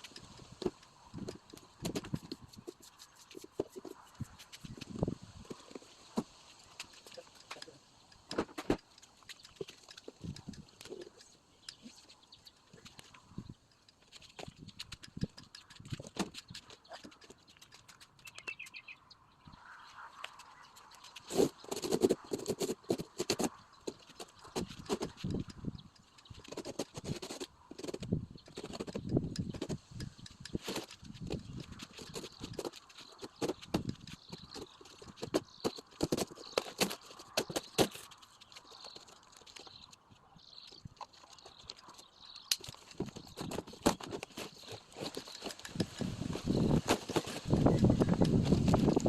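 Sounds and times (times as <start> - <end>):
irregular clicks and knocks: 0.0 - 18.5.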